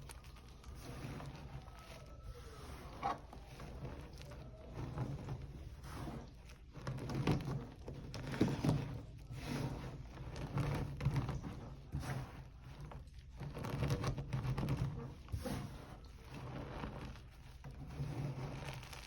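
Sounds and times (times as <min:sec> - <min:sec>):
chalk blocks crunching: 0:00.0 - 0:14.2.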